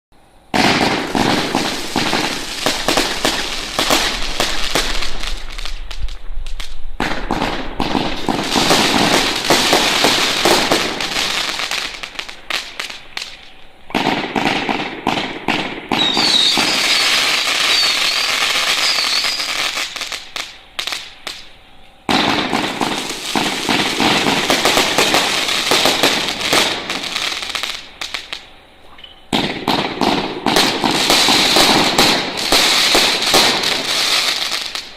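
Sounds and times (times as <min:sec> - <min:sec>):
wavering firework whistles: 0:00.2 - 0:34.9
dense firework crackling: 0:00.5 - 0:21.5, 0:22.1 - 0:28.5, 0:29.3 - 0:34.9
firework cake firing shots: 0:00.6 - 0:05.0, 0:12.9 - 0:20.2, 0:22.1 - 0:28.4, 0:29.3 - 0:34.9.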